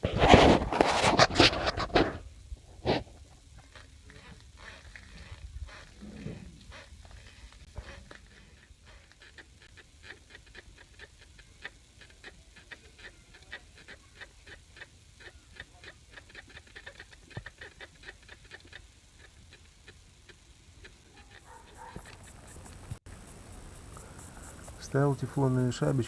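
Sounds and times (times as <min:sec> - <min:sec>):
rubber bushings squeaking: 0:03.5 - 0:23.0.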